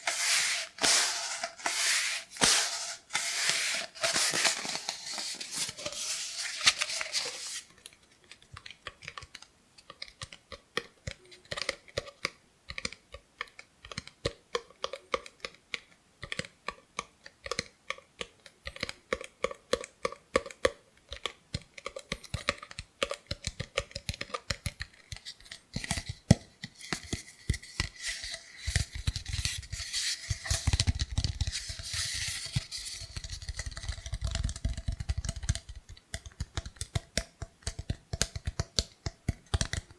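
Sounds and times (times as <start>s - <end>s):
scratching and rubbing cardboard: 0.0s - 7.7s
fingers tapping cardboard tube: 8.6s - 39.9s.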